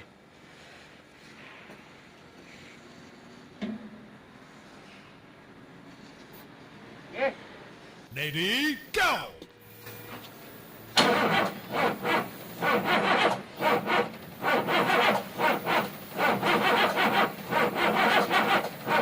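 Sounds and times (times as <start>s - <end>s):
diesel engine cranking: 10.7s - 19.0s.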